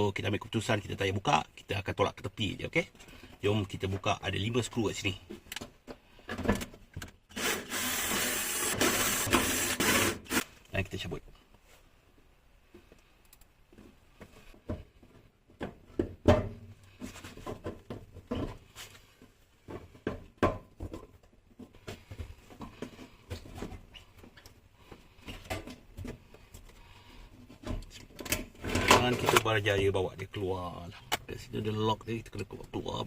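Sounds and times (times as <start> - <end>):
knocks clunks and scraping: 13.6 - 33.0.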